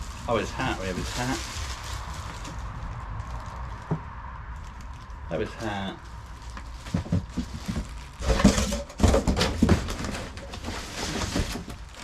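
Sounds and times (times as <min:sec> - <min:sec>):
packaging rustling and knocking: 0:06.2 - 0:12.0.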